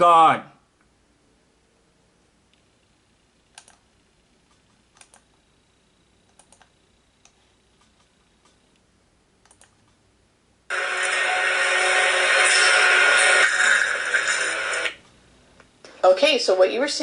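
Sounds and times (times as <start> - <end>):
keyboard or mouse clicks: 3.5 - 3.8, 4.5 - 5.3, 6.3 - 8.6, 9.4 - 10.0.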